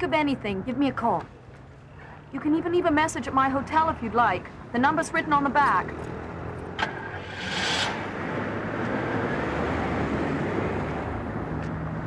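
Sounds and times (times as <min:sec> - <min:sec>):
passing cars rumbling: 0:03.2 - 0:12.0.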